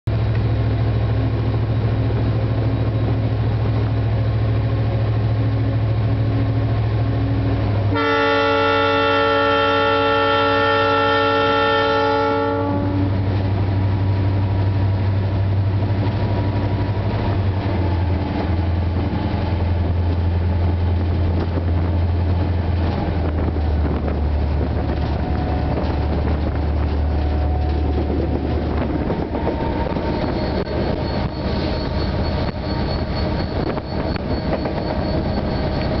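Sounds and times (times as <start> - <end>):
diesel locomotive engine rumble: 0.0 - 36.0
wheels on rail: 0.1 - 36.0
locomotive air horn: 7.9 - 13.2.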